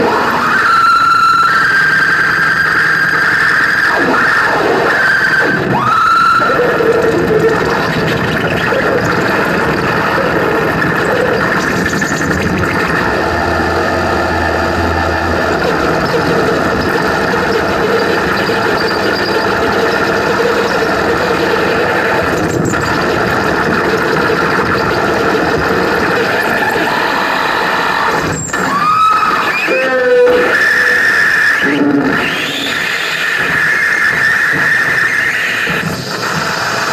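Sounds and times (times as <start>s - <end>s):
steady droning tones: 0.0s - 33.0s
wall of electronic noise: 0.0s - 36.9s.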